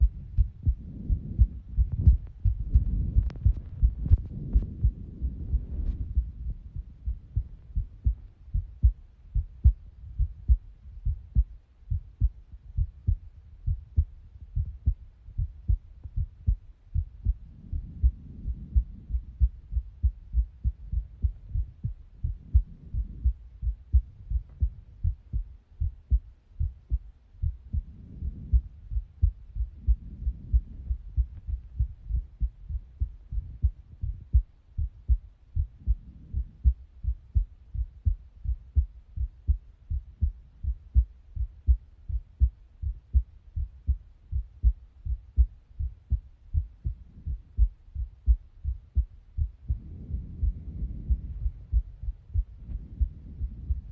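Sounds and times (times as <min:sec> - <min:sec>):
soft rushing noise: 0:00.0 - 0:08.3
heartbeat thumps: 0:00.0 - 0:53.9.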